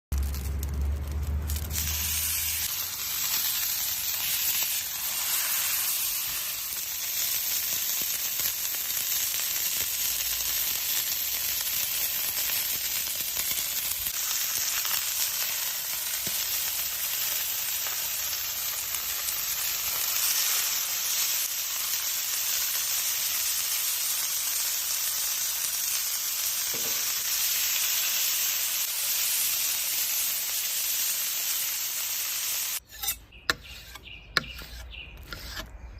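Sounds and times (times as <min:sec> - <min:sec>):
fat sizzling in a pan: 0:00.2 - 0:34.0.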